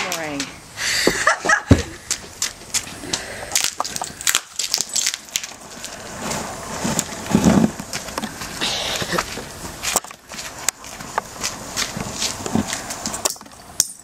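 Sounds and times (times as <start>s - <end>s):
low crunch: 0.9s - 13.7s.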